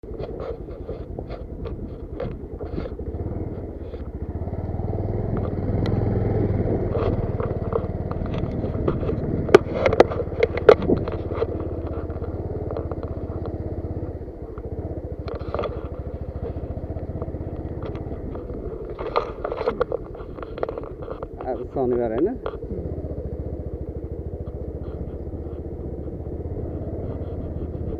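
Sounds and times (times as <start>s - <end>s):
motorcycle engine running: 0.0s - 27.9s
sharp knocks and rattles: 6.6s - 22.7s.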